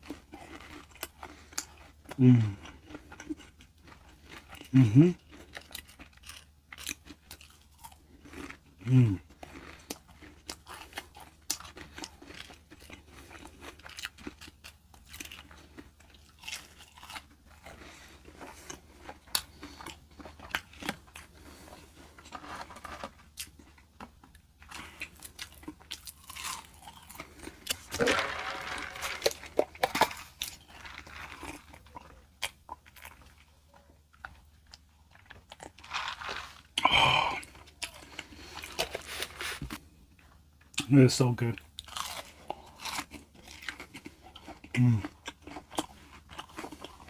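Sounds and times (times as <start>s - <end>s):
crunchy food being chewed: 0.0s - 47.0s.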